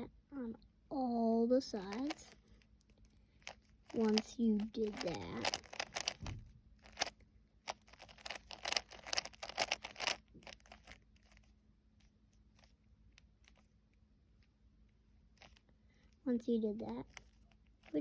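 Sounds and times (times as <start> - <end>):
puzzle cube clicking turns: 1.8 - 2.4, 3.3 - 11.5, 17.0 - 18.0.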